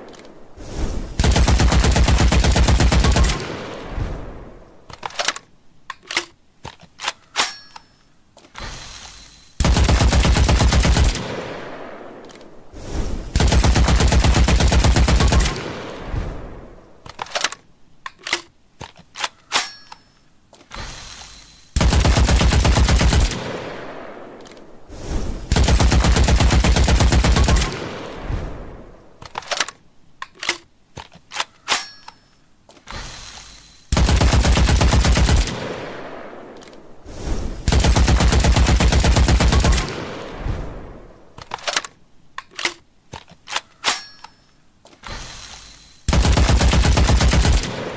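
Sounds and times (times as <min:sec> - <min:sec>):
machine gun bursts echoing: 0:01.2 - 0:03.6, 0:09.6 - 0:11.3, 0:13.3 - 0:15.9, 0:21.8 - 0:23.4, 0:25.5 - 0:28.0, 0:33.9 - 0:35.6, 0:37.6 - 0:40.3, 0:46.1 - 0:47.9
clicks and metallic clinks: 0:04.9 - 0:09.6, 0:17.1 - 0:21.7, 0:29.2 - 0:33.9, 0:41.4 - 0:46.0.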